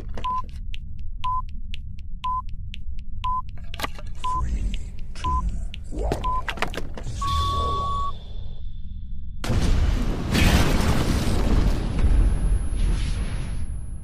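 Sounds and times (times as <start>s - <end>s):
low rumble: 0.0s - 14.0s
electronic buzzer beeping: 7.2s - 8.2s.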